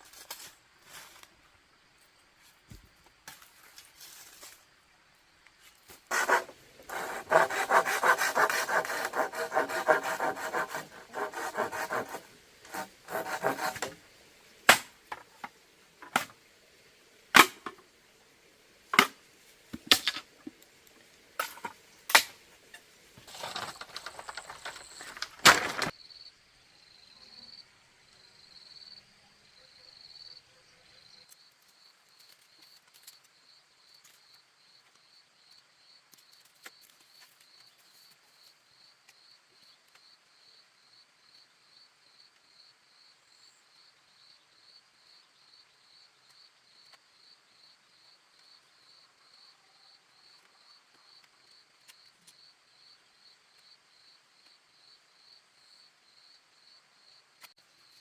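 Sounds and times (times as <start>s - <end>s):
hand tool rasping bamboo: 6.1s - 14.0s.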